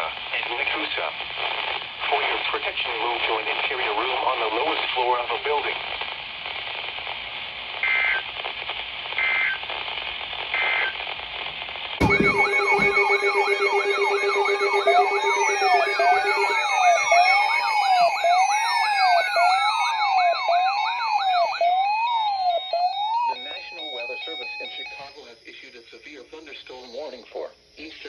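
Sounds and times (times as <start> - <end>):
electronic siren tones: 12.0 - 25.7
data tone bursts: 12.0 - 26.2.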